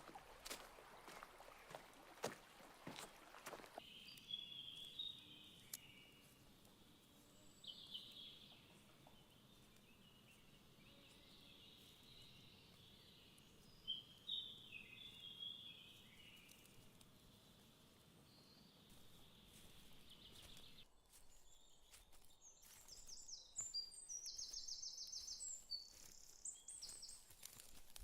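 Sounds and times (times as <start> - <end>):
faint birdsong chirps and trills: 0.0 - 28.0.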